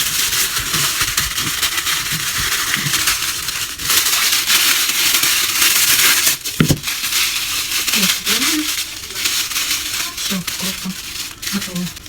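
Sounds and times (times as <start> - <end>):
aluminium foil crinkling: 0.0 - 12.0.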